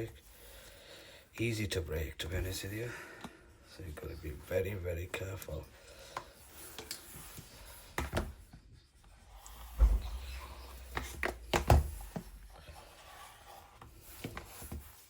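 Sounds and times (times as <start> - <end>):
dull low thump: 9.6 - 12.4.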